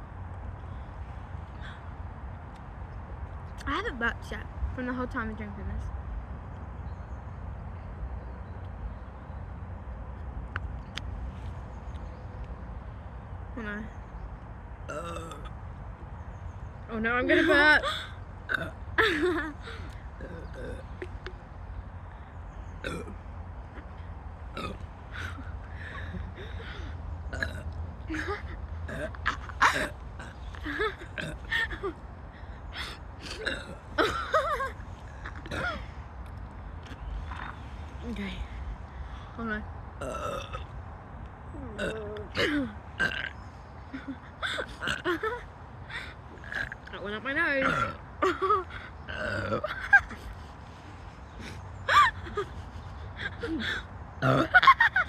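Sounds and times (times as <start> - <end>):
girls gasping and squeaking: 25.2 - 27.0, 30.6 - 33.4, 53.2 - 53.9
girls laughing and squealing: 51.9 - 53.8.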